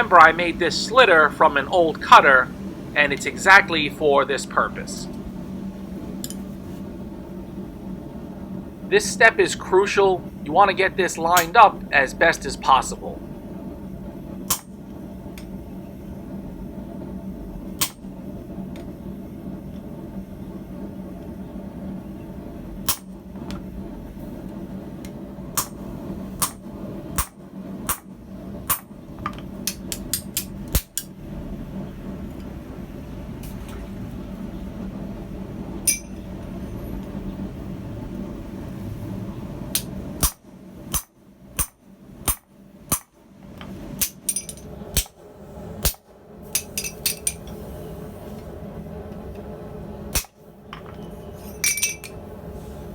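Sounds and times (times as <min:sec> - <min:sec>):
steady low hum: 0:00.0 - 0:52.9
hammer striking hot steel: 0:11.1 - 0:11.7, 0:14.5 - 0:14.8, 0:17.8 - 0:18.1, 0:22.8 - 0:23.2, 0:25.5 - 0:31.1, 0:35.8 - 0:36.3, 0:39.7 - 0:45.2, 0:45.8 - 0:47.6, 0:50.1 - 0:52.2.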